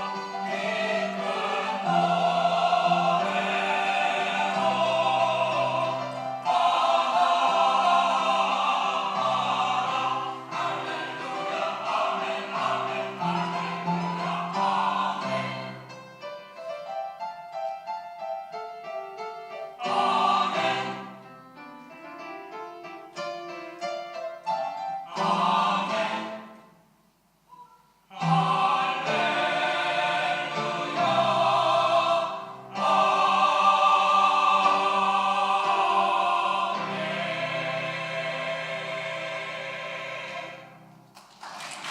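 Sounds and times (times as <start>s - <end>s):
church choir singing: 0.0s - 16.3s, 19.5s - 21.4s, 24.6s - 26.7s, 28.1s - 41.0s
piano: 0.0s - 41.9s.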